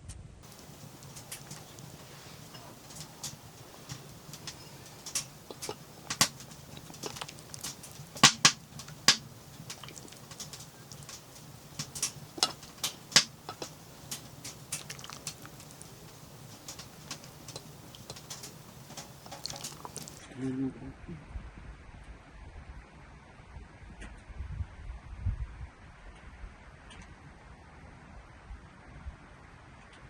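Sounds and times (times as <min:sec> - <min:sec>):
metal spoon scraping pot: 0:00.5 - 0:20.2
spoon knocking on pot: 0:00.5 - 0:20.2.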